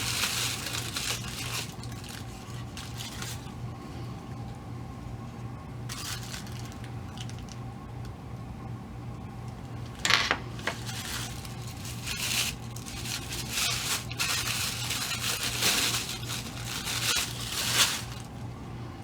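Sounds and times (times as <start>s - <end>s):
packaging crinkling and tearing: 0.0s - 3.6s, 5.9s - 7.6s, 10.4s - 18.5s.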